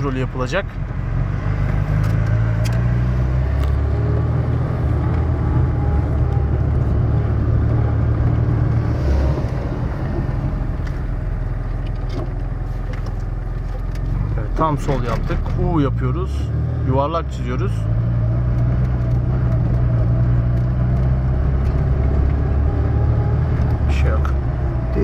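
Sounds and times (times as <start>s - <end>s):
car engine running: 0.0s - 25.0s.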